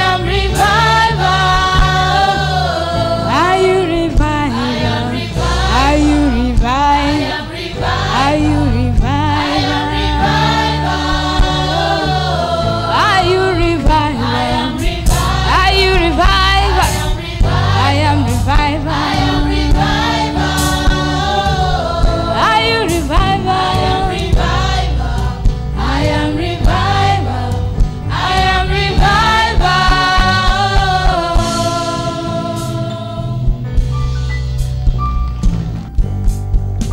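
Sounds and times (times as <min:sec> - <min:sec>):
choir singing gospel: 0:00.0 - 0:34.6
bass line: 0:00.0 - 0:36.9
drum hits: 0:09.0 - 0:12.3, 0:13.6 - 0:36.9.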